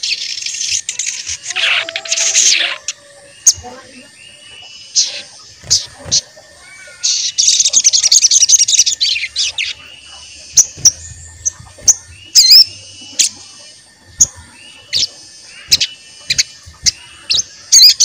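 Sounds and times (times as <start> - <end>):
jay rattling chatter: 0.9 - 4.1.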